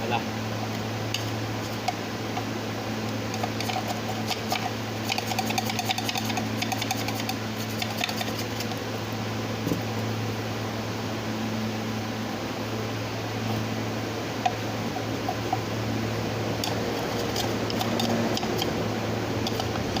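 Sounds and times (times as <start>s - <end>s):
low mechanical hum: 0.0s - 20.0s
hand tools clicking and rattling: 3.3s - 8.7s, 16.6s - 18.8s.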